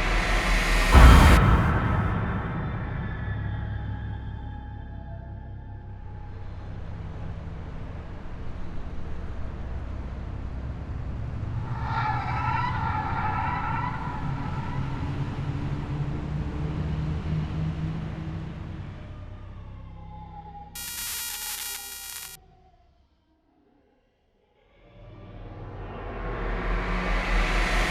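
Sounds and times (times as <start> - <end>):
wavering high-pitched siren tone: 20.8 - 22.4.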